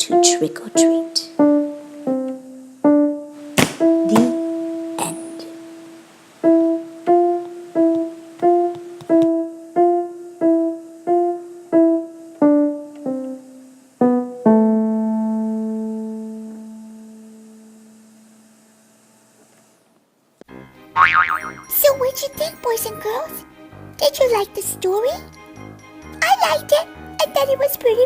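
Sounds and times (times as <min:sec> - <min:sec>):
slow piano notes: 0:00.0 - 0:18.6.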